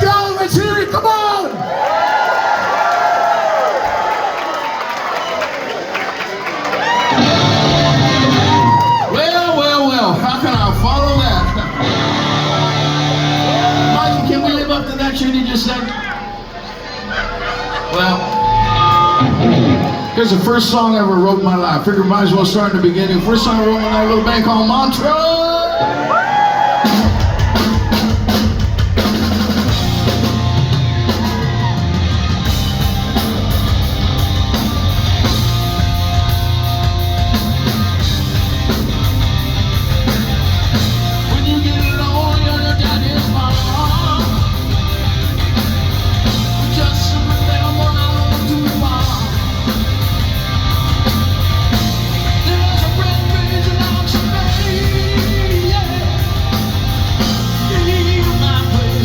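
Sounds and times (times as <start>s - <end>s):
live rock band playing: 7.0s - 16.6s, 17.2s - 25.2s, 26.7s - 59.0s
person singing or yelling: 52.4s - 56.7s.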